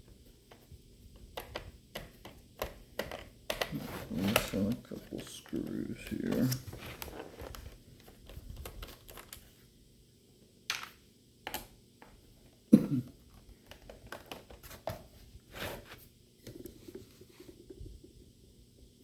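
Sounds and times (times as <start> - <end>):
clicks and knocks on plastic laptop: 1.2 - 4.8, 13.3 - 15.1.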